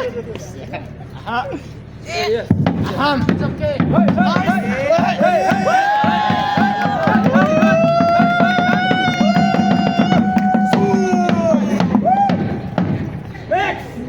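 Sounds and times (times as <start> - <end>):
drums and percussion: 2.5 - 13.5.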